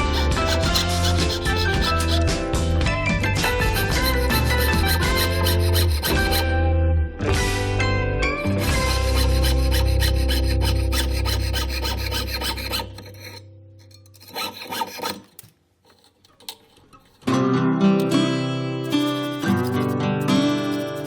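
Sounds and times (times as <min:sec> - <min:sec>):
metal being filed by hand: 0:00.0 - 0:02.4, 0:03.4 - 0:06.5, 0:08.4 - 0:17.3, 0:18.8 - 0:21.0
acoustic guitar music: 0:00.0 - 0:10.9, 0:17.2 - 0:21.0.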